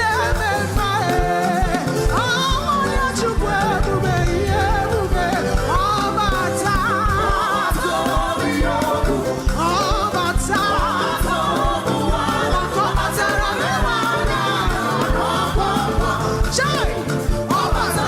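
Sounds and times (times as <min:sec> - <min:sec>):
band playing with steady beat: 0:00.0 - 0:18.0
voices singing: 0:00.0 - 0:18.0.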